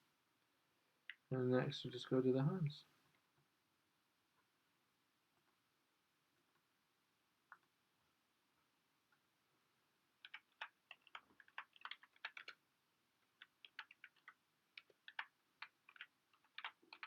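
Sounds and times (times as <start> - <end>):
computer keyboard typing: 10.2 - 12.6, 13.2 - 17.0.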